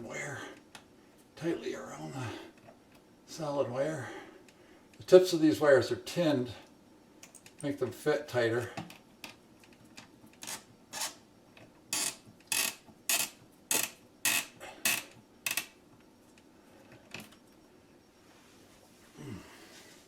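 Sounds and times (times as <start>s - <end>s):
wire twisting scrapes: 10.4s - 11.2s.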